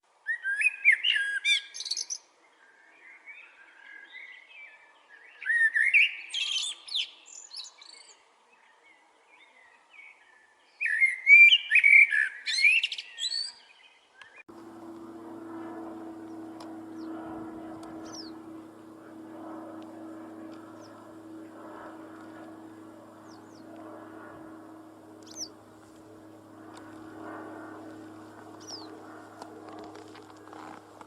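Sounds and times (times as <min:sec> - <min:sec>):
steady low hum: 0:14.5 - 0:31.0
muffled noisy background: 0:14.7 - 0:31.0
small birds chirping: 0:16.1 - 0:31.0.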